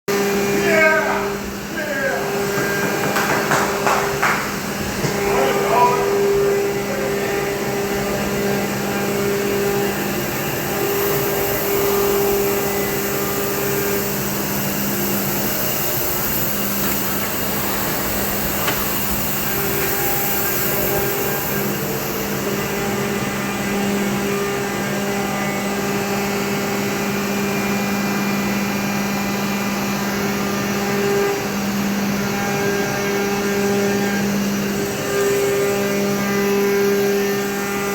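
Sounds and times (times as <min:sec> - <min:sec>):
low machine tones: 0:00.1 - 0:25.8
machining center humming: 0:00.1 - 0:37.9.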